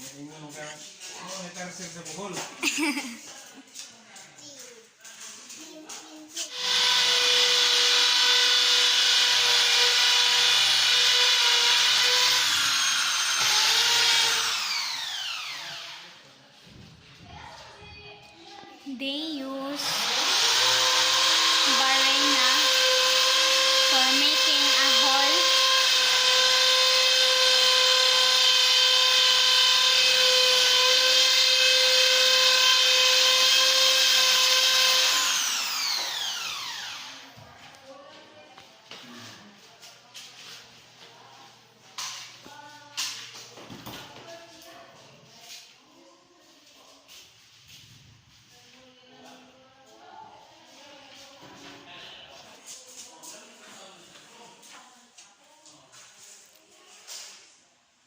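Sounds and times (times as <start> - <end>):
electric drill whining: 6.5 - 16.1, 19.8 - 37.3.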